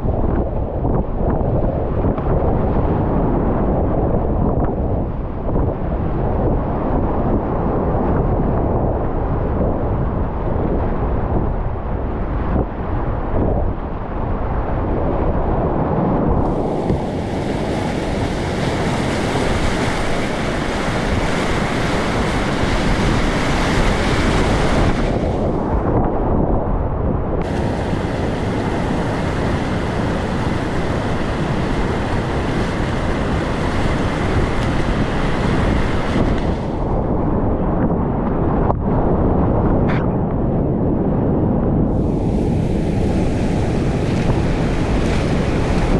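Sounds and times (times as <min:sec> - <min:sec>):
wind buffeting microphone: 0:00.0 - 0:45.9
whitewater rapids rushing: 0:16.5 - 0:25.6, 0:27.4 - 0:36.8.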